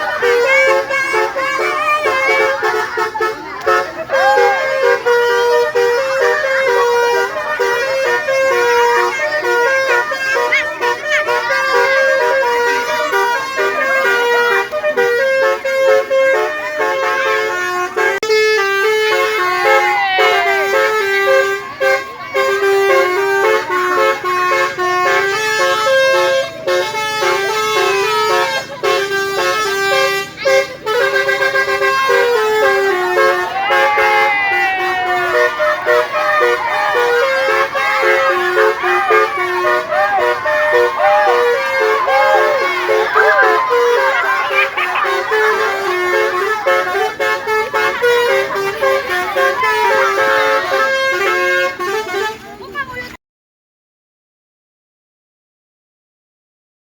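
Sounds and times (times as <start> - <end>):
multi-tone bus horn tune: 0.0 - 53.1
siren-like whoops: 33.5 - 37.3, 38.9 - 45.6.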